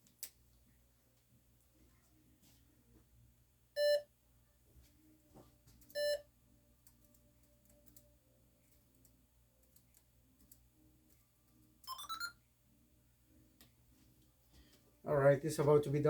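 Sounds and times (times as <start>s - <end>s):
short electronic beep: 11.9s - 12.4s.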